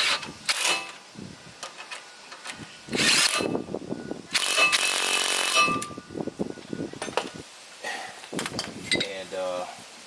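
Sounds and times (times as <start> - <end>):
power tool motor whine: 2.9 - 3.5.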